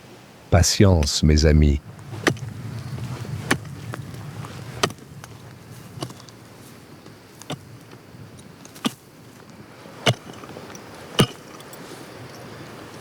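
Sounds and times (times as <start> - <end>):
low steady rumble: 0.6 - 6.5.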